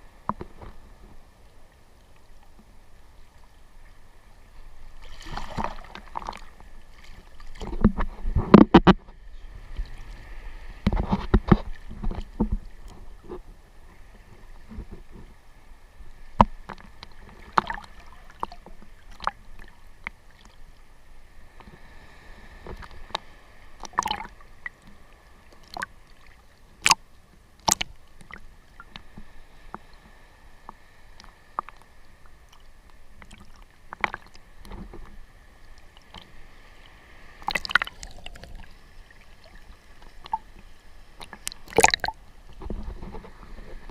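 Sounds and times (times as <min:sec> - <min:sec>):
seawater sloshing and splashing: 0:05.0 - 0:09.1, 0:22.4 - 0:27.0, 0:33.2 - 0:43.9
sharp splashes and knocks: 0:05.0 - 0:09.1, 0:16.4 - 0:19.4, 0:27.6 - 0:28.4, 0:37.4 - 0:38.6, 0:41.2 - 0:43.2.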